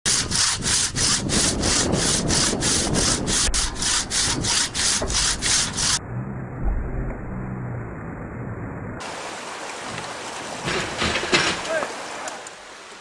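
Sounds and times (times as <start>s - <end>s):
hand saw cutting wood: 0.0s - 6.0s.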